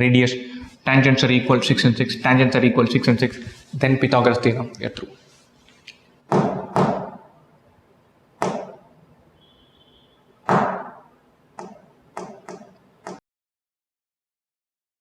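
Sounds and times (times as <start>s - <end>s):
sharp knocks with room echo: 6.3s - 7.4s, 8.4s - 8.9s, 10.4s - 13.2s.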